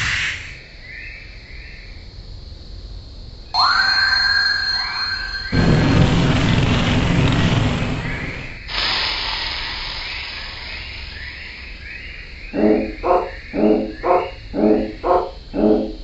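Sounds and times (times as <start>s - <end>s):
high whistle tone: 3.6s - 5.6s
loud rumbling rattle: 5.5s - 11.2s.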